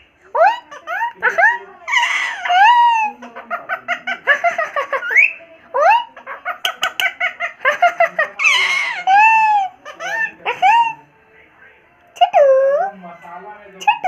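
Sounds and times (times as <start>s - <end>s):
harsh parrot call: 0.3s - 7.7s, 8.4s - 11.0s
parrot chattering: 0.3s - 11.0s
parrot whistled calls: 5.1s - 5.4s.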